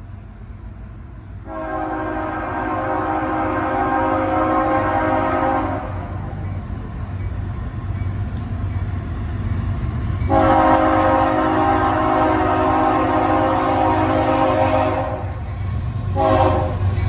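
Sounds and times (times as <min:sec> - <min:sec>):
locomotive engine rumble: 0:00.0 - 0:17.0
locomotive air horn chord: 0:01.4 - 0:06.2, 0:10.3 - 0:15.4, 0:16.2 - 0:17.0.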